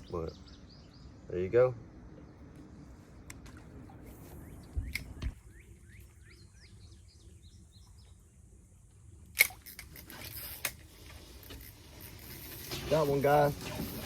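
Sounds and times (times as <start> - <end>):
sharp click: 9.3 - 10.8.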